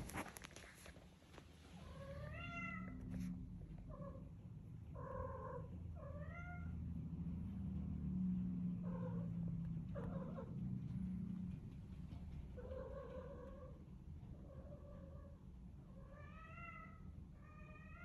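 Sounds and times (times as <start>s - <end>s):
cat meowing: 1.8s - 3.1s.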